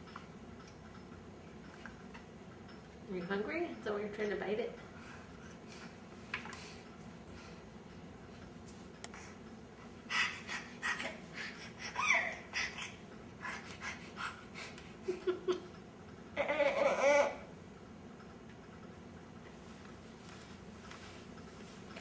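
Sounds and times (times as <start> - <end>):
baby panting: 10.0 - 14.8
baby squealing: 11.8 - 13.6, 16.4 - 17.4.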